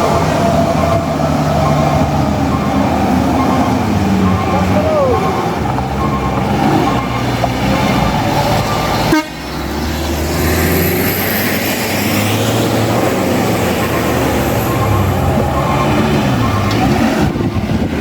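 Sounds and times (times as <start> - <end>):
bus engine running: 0.0 - 18.0
bus horn: 8.8 - 9.6.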